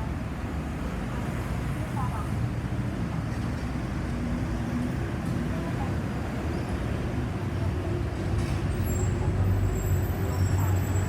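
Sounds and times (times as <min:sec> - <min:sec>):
road traffic noise: 0:00.0 - 0:11.0.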